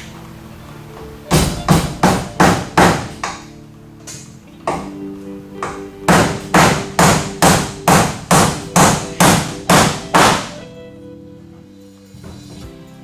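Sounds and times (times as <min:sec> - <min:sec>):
hammer striking a fastener: 0:01.3 - 0:03.5, 0:05.6 - 0:10.6.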